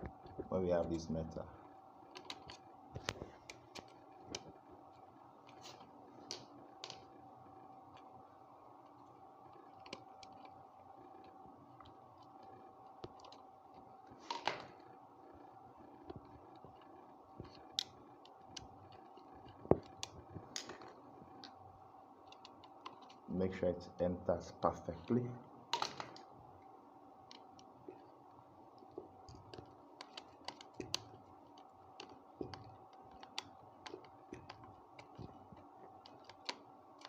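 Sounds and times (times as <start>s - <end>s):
faint steady hum: 0.0s - 37.0s.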